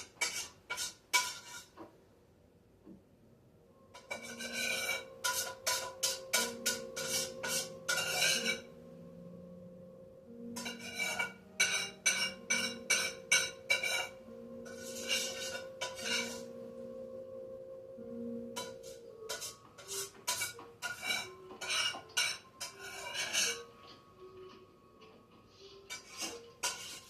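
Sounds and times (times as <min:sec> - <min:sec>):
faint background music: 0:00.0 - 0:27.0.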